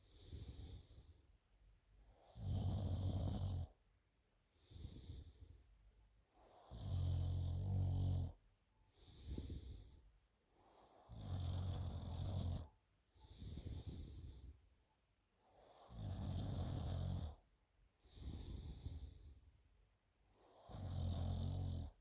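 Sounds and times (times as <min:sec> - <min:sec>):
person snoring: 0:11.0 - 0:14.5, 0:15.8 - 0:17.4, 0:18.0 - 0:19.4, 0:20.5 - 0:22.0
hissing breath: 0:13.2 - 0:14.6, 0:18.0 - 0:19.5.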